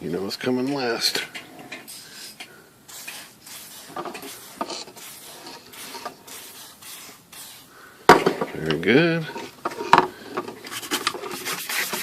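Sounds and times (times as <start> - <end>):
polishing strokes on plastic: 1.8 - 7.8, 10.6 - 12.0.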